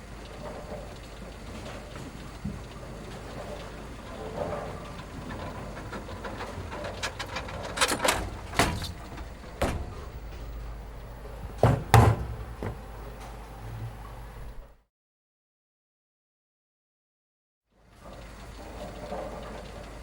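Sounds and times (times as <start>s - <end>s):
sharp knocks and clatters: 2.4s - 13.3s
steady low rumble: 6.0s - 11.6s.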